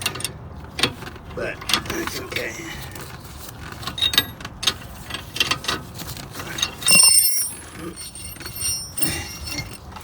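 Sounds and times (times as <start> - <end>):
metal tools clinking: 6.6 - 10.0
ringing metallic clank: 6.8 - 9.8.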